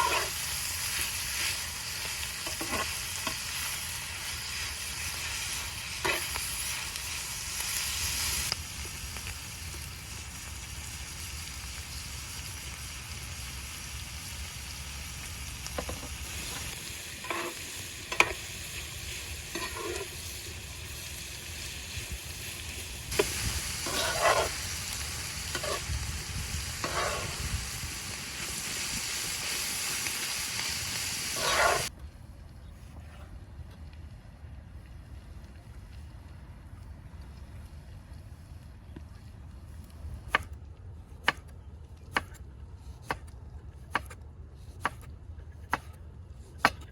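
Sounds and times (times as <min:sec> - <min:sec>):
utensil scraping a pan: 0:00.0 - 0:00.5, 0:02.4 - 0:03.4, 0:05.9 - 0:06.4, 0:16.3 - 0:18.4, 0:19.5 - 0:20.4, 0:23.2 - 0:24.6, 0:25.5 - 0:25.9, 0:26.8 - 0:27.5, 0:31.3 - 0:31.9
food sizzling in oil: 0:00.0 - 0:31.9.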